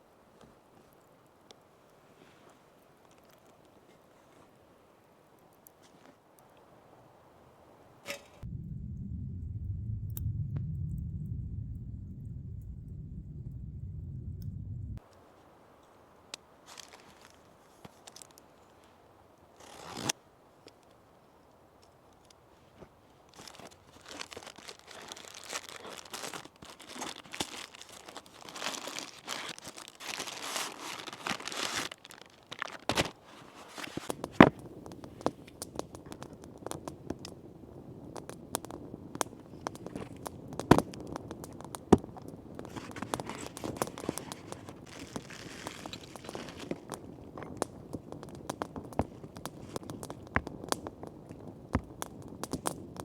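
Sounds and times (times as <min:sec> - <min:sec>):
light crackle: 0:00.0 - 0:53.0
crinkling and rustling: 0:16.6 - 0:19.0, 0:19.6 - 0:21.0, 0:22.1 - 0:36.4, 0:39.5 - 0:52.8
sharp cracks: 0:23.4 - 0:37.3.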